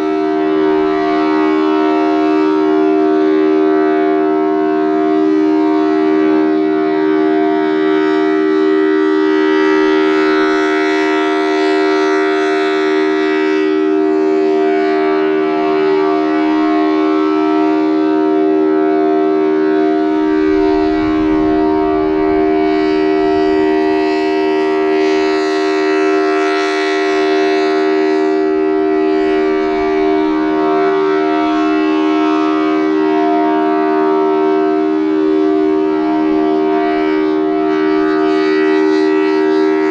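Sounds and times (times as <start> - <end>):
tornado siren two-note chord: 0.0 - 39.9
wind gusts on microphone: 20.0 - 26.4, 28.4 - 31.5.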